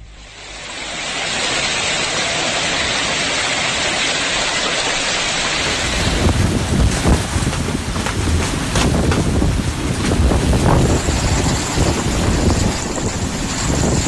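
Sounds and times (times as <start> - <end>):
storm water hissing: 0.0 - 14.0.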